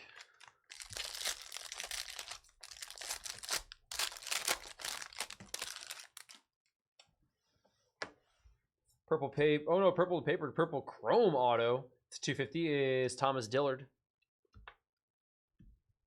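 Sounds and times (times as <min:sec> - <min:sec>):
plastic foil wrappers crinkling: 0:00.0 - 0:06.4.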